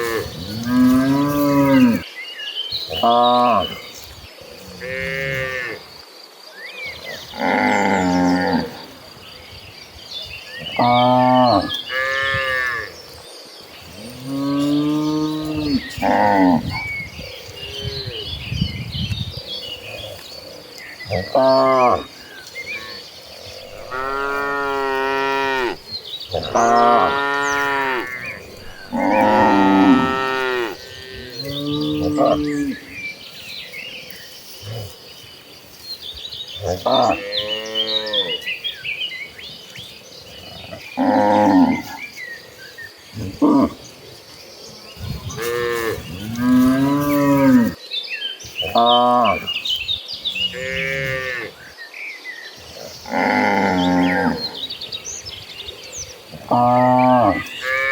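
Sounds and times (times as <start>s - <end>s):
cattle mooing: 23.6s - 32.8s.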